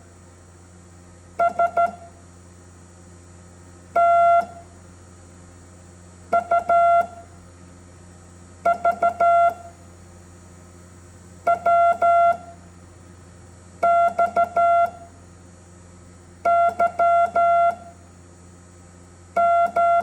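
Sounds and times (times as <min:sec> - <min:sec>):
morse code beeps: 0:01.4 - 0:02.0, 0:19.4 - 0:20.0.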